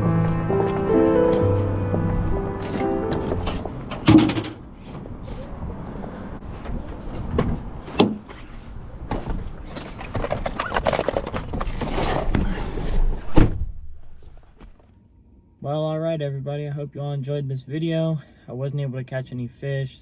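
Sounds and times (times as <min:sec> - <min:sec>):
sharp knocks: 0:03.9 - 0:04.6.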